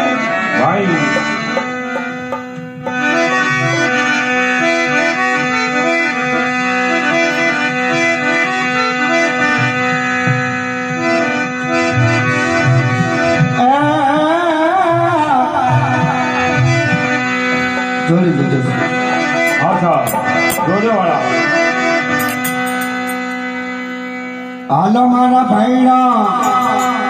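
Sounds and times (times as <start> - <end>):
harmonium melody over drone: 0.0 - 27.0
hand drum beats: 1.0 - 3.8
wavering sliding melodic line: 17.3 - 23.5.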